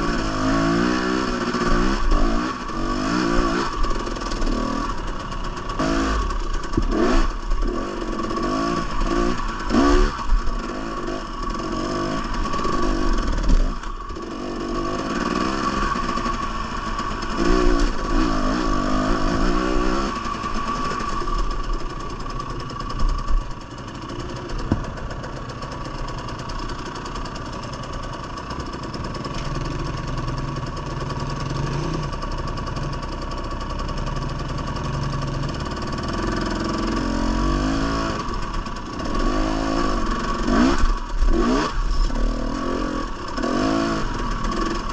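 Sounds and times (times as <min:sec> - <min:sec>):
dirt bike engine revving: 0:00.0 - 0:24.9, 0:31.2 - 0:32.4, 0:35.6 - 0:44.9.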